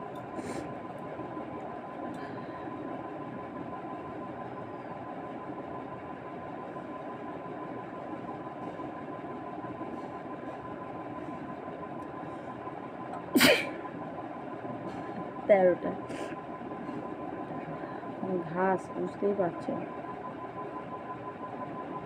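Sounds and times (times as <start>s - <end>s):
person sneezing: 13.4s - 13.8s.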